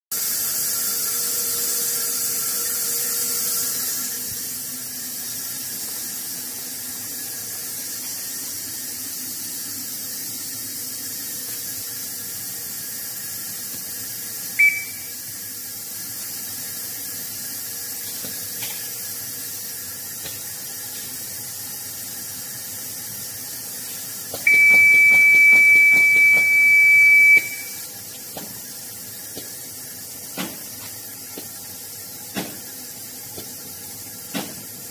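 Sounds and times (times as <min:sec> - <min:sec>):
machine hiss: 0:00.1 - 0:34.9
loud steady beep: 0:14.6 - 0:15.2, 0:24.5 - 0:27.9
short electronic beep: 0:14.6 - 0:15.2, 0:24.5 - 0:27.9.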